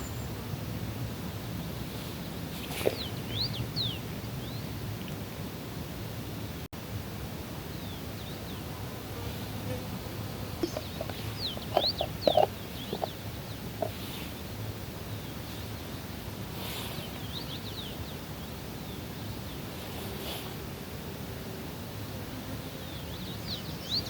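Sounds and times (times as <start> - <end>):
birds chirping: 2.1 - 5.2, 10.4 - 19.6.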